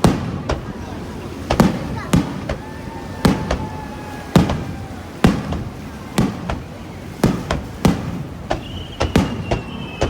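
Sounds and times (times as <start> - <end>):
fireworks bursting: 0.0 - 10.0
faint falling whistle: 8.5 - 10.0.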